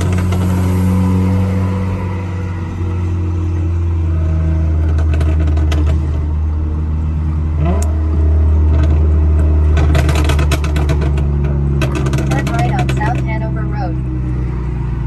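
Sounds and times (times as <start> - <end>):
exhaust pops and crackles: 0.0 - 0.8, 4.6 - 6.5, 7.6 - 13.9
car engine droning: 0.0 - 15.0.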